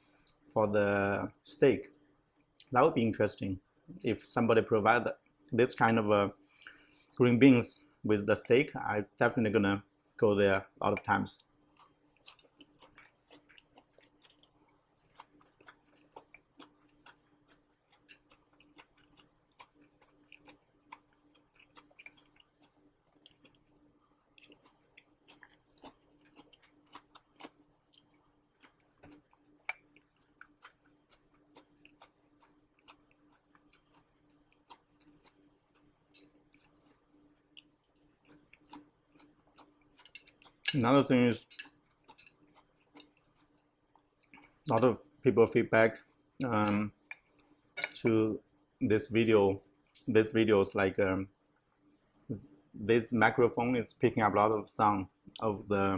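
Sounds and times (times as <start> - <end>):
crunchy chewing: 11.4 - 45.3, 45.9 - 47.8.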